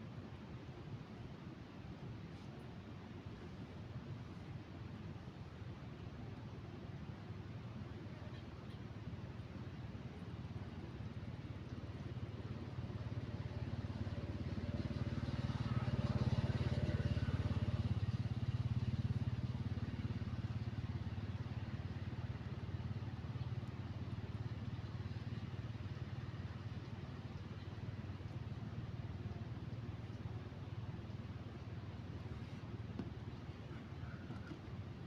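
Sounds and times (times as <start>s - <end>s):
motor engine droning: 12.2s - 35.0s.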